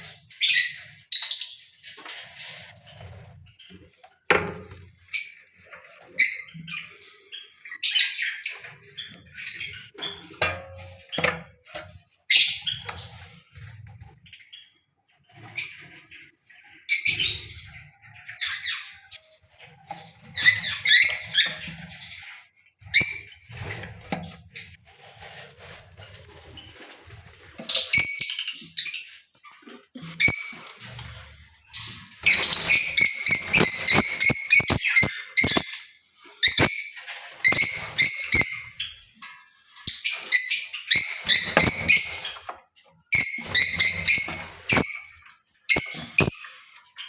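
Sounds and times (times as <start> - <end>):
lovebirds chirping and squawking: 0.0 - 4.0, 4.9 - 11.3, 11.9 - 24.0, 26.3 - 47.0.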